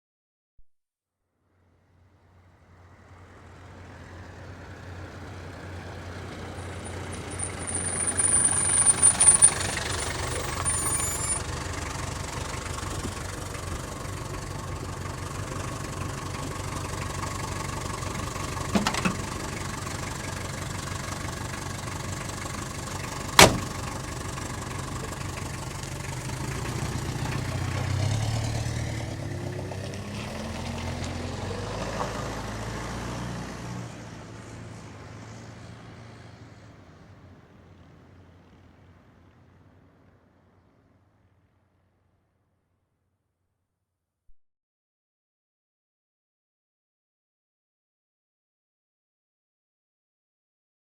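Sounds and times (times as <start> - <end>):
car engine running: 2.4 - 30.0
brake squeal: 3.2 - 29.1
car door opening clunk: 18.7 - 19.3, 23.4 - 23.8.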